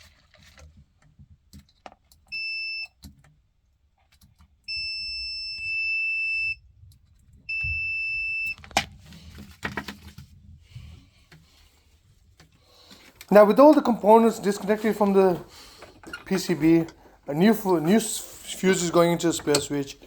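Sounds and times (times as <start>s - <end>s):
multimeter beeping: 2.4s - 2.9s, 4.7s - 6.6s, 7.5s - 8.6s.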